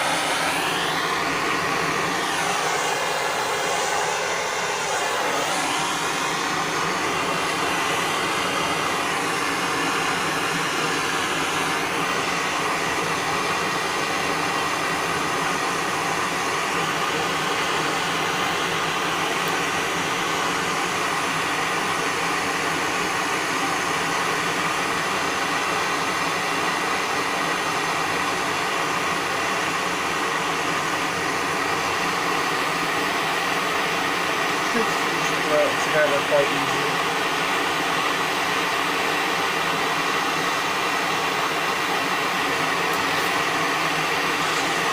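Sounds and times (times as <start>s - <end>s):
gas torch hissing: 0.0s - 44.9s.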